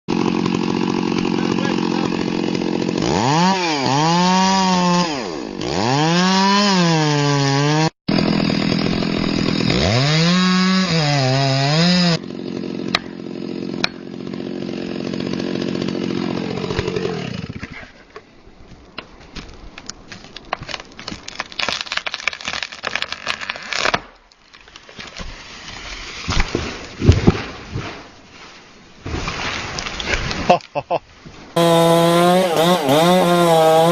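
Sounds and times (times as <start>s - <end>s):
chainsaw engine revving: 0.1s - 17.7s, 31.6s - 33.9s
wood cracking and snapping: 18.9s - 27.9s.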